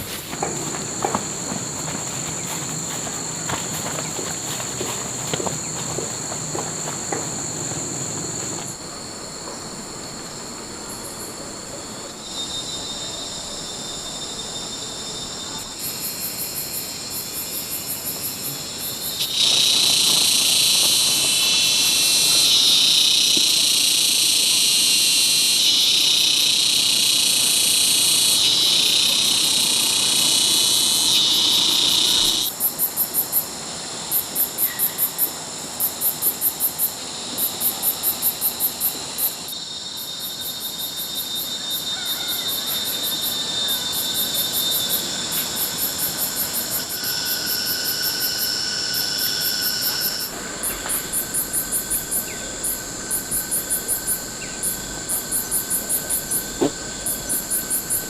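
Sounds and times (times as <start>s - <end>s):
loud insect buzzing chorus: 0.0s - 8.8s, 14.1s - 58.0s
insects trilling: 0.0s - 58.0s
rapid pulsed insect chirps: 12.1s - 58.0s.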